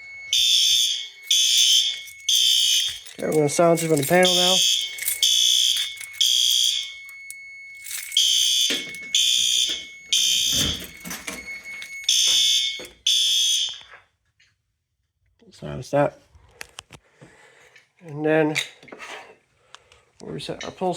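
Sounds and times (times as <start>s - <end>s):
thin steady high tone: 0.0s - 13.0s
fire alarm horn blasts: 0.0s - 14.0s.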